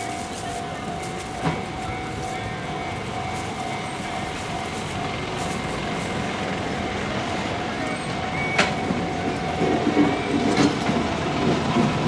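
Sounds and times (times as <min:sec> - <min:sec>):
crossing warning bell ringing: 0:00.0 - 0:12.0
train wheels rumbling on rails: 0:00.0 - 0:12.0.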